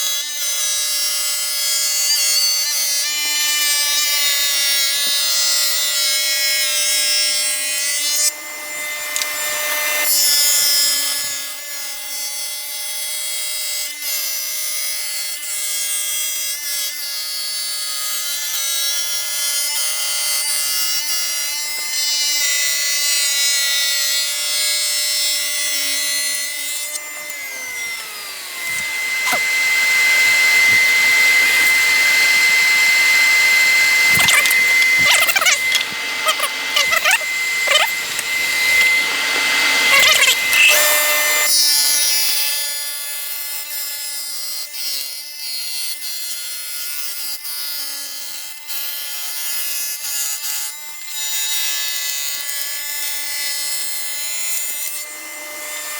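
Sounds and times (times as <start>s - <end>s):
table saw cutting wood: 0.0s - 55.9s
saw blades spinning down: 26.4s - 41.7s.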